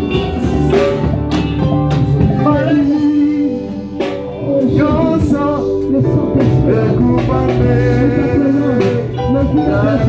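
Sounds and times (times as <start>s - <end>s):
worship band playing: 0.0s - 10.0s
voices singing: 2.0s - 10.0s.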